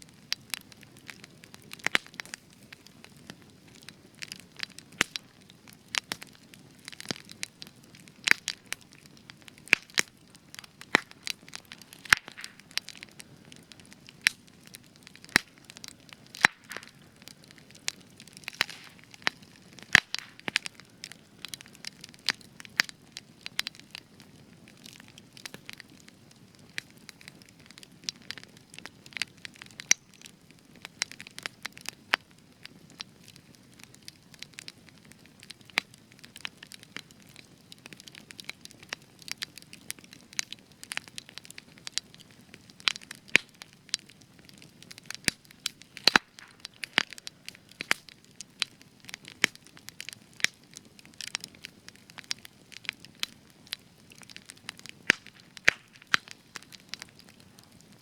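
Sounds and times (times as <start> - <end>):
campfire crackling and popping: 0.0 - 58.0
soft hiss of flame: 10.0 - 21.9.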